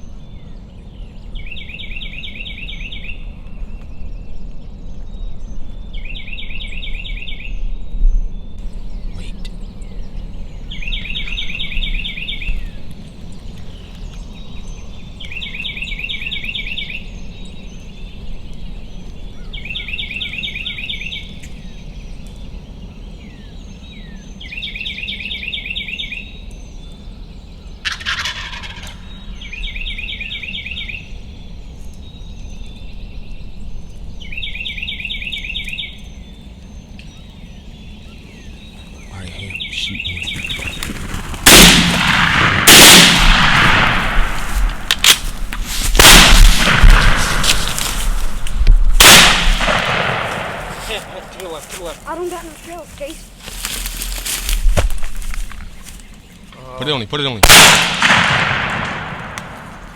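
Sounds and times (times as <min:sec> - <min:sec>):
turkey gobbling: 0:27.9 - 0:29.3
burst of noise: 0:41.1 - 0:51.6.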